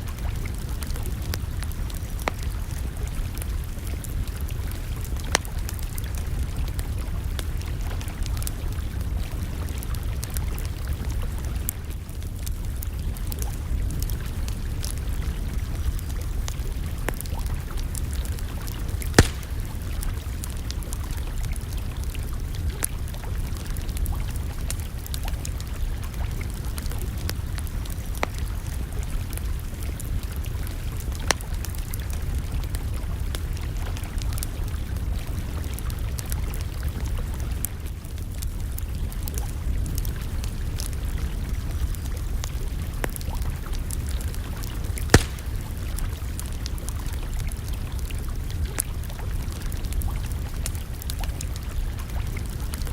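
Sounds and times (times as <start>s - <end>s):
campfire crackling: 0.0s - 52.9s
steady low rumble: 12.2s - 22.8s
sharp fire pops: 18.0s - 21.6s, 43.0s - 46.8s.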